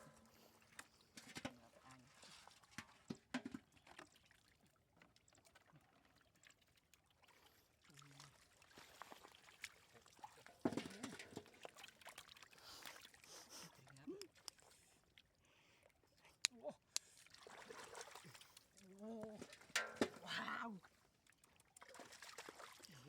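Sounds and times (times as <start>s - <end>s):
water trickling and splashing: 0.0s - 23.0s.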